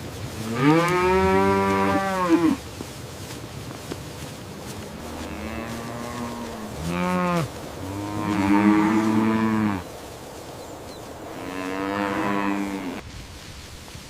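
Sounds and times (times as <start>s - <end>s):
cows mooing: 0.4s - 2.6s, 4.6s - 9.9s, 11.3s - 13.0s.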